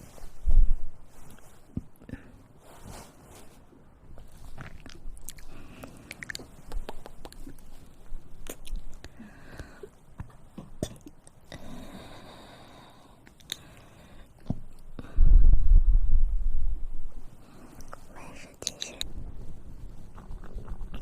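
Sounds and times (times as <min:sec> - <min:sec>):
mouth clicks and smacks: 0:04.6 - 0:09.1, 0:13.2 - 0:13.8, 0:17.8 - 0:19.1.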